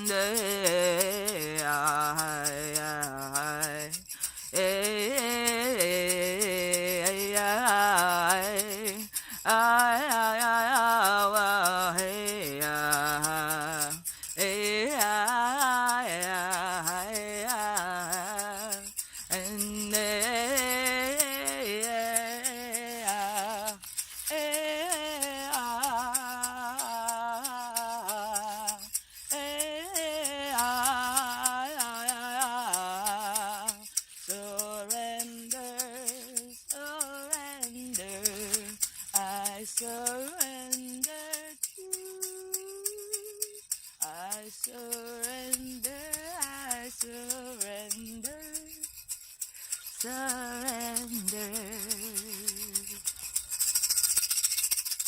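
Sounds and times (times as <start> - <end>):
woman singing wordless melody: 0.0 - 53.6
hand rattle shaken: 0.0 - 55.0.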